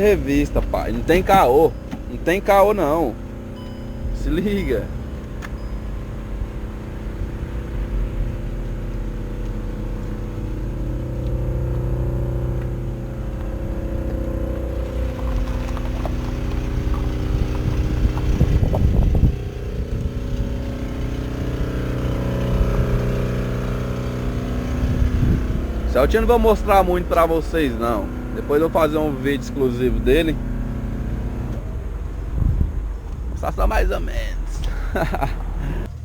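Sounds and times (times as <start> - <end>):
car engines running: 0.0 - 36.0
wavering engine burst: 9.8 - 36.0.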